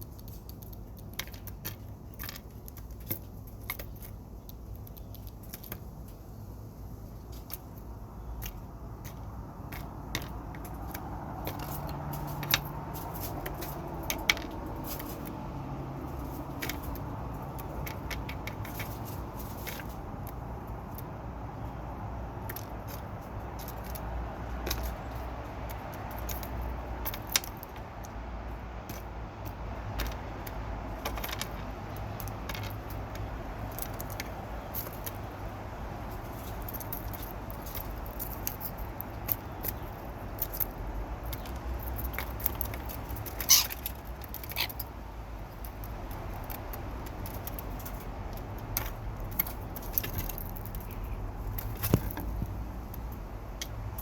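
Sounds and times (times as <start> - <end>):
birds pecking and tapping: 0.0 - 54.0.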